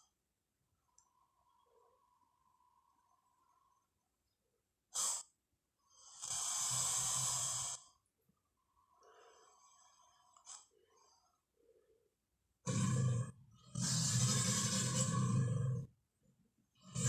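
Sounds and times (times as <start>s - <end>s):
loud hissing exhale: 5.0s - 5.3s, 6.0s - 8.0s, 13.8s - 15.3s
creature snort: 12.6s - 15.9s.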